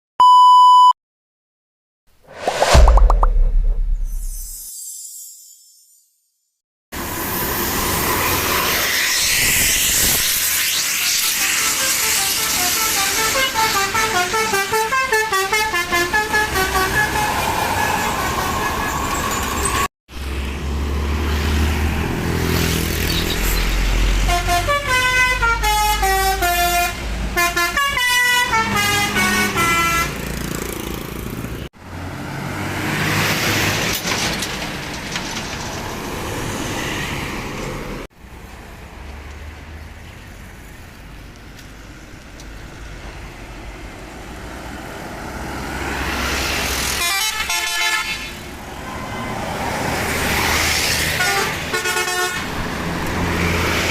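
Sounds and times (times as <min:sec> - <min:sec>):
road and traffic noise: 0:06.9 - 0:53.9
multi-tone air horns playing melodies: 0:11.2 - 0:17.4, 0:24.3 - 0:30.1, 0:47.0 - 0:48.3, 0:51.2 - 0:52.4.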